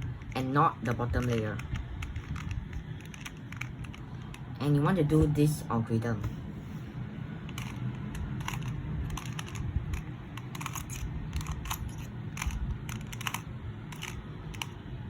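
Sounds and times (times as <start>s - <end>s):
speed cube clicking: 0.0s - 4.6s, 7.4s - 14.8s.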